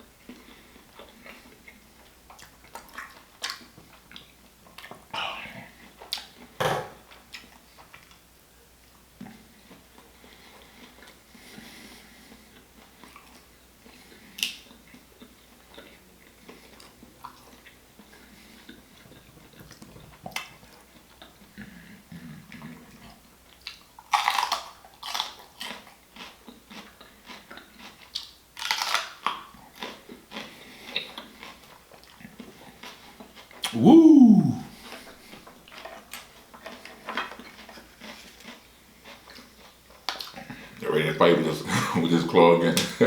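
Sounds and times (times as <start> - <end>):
wet chewing and lip smacks: 0.3 - 6.5, 12.3 - 21.5, 22.5 - 33.8, 34.5 - 40.7.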